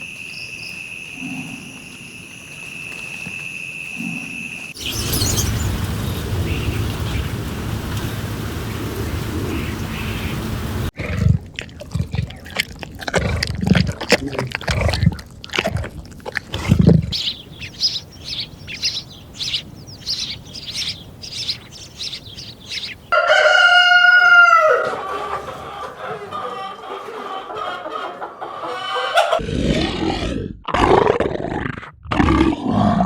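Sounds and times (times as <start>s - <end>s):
chickens clucking: 6.3s - 29.4s
rooster crowing: 22.1s - 27.8s.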